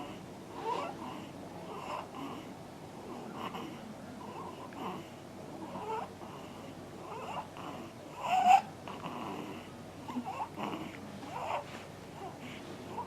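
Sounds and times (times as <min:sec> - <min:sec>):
squeaky snoring: 0:05.7 - 0:06.1, 0:07.1 - 0:09.7.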